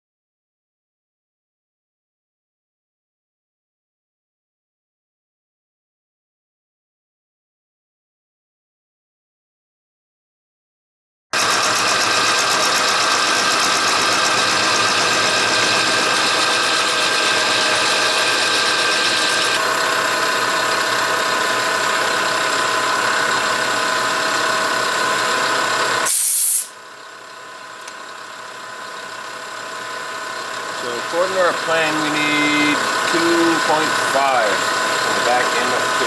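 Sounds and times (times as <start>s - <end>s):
milling machine cutting steel: 11.4s - 26.7s, 28.8s - 36.0s.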